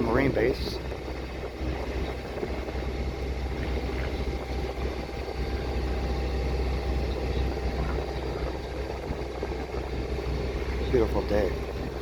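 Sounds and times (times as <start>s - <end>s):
boat engine droning: 0.0s - 12.0s
water rushing: 0.0s - 12.0s.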